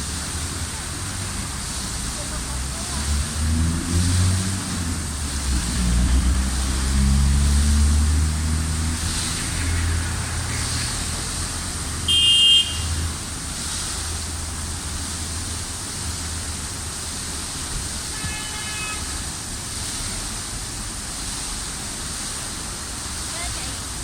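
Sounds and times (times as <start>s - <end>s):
passing vehicle rumble: 0.0s - 12.2s
traffic rushing hiss: 0.0s - 24.0s
car horn toot: 12.1s - 13.0s, 18.1s - 19.2s
faint horn-like tone: 18.1s - 19.2s.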